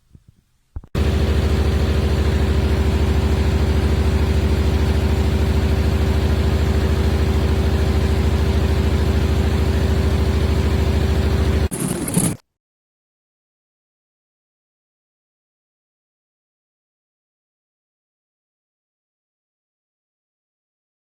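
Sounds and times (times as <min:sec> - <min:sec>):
machine humming and pulsing: 0:01.0 - 0:12.4.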